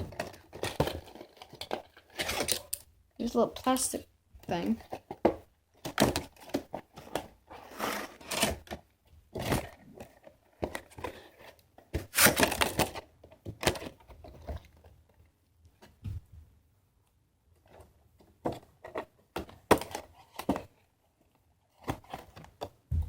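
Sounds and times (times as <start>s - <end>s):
plastic and cardboard packaging crinkling: 0.0s - 15.2s.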